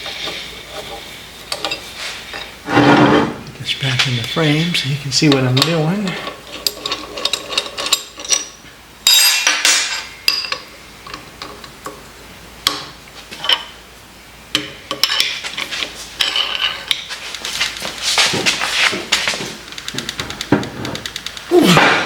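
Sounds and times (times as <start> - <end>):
metal tools clinking and knocking: 5.4 - 10.6.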